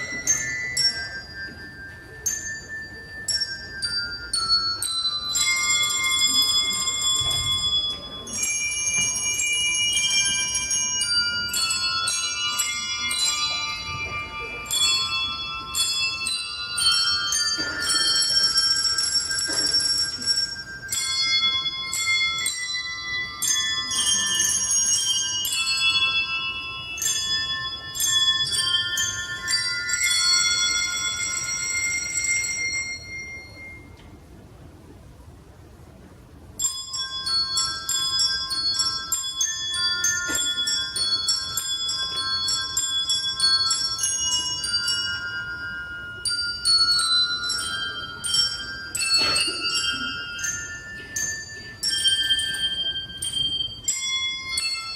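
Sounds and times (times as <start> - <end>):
hand bells playing a tune: 0.0 - 34.2, 36.5 - 54.9.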